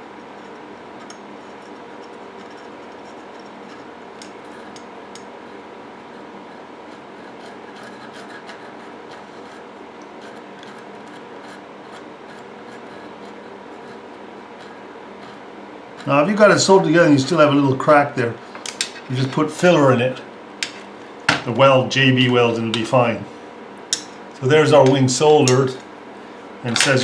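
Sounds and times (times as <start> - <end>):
steady low hum: 0.0 - 27.0
metal piece rubbing and scraping: 1.5 - 4.9, 5.5 - 16.2.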